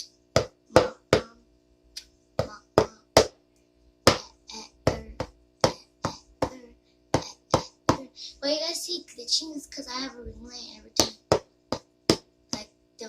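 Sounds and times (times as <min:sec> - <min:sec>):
faint steady hum: 0:00.0 - 0:13.0
sharp taps: 0:04.1 - 0:04.3, 0:11.0 - 0:12.7.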